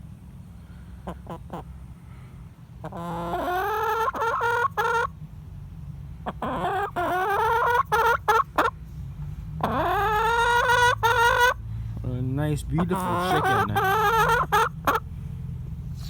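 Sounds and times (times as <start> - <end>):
hen clucking and squawking: 0.7 - 1.8, 2.7 - 5.2, 6.1 - 8.8, 9.5 - 11.7, 12.6 - 15.5.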